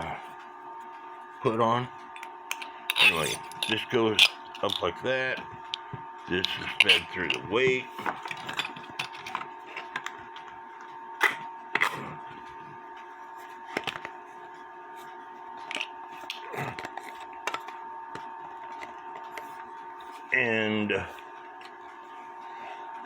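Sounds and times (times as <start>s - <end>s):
metal parts clicking and knocking: 2.5s - 4.9s.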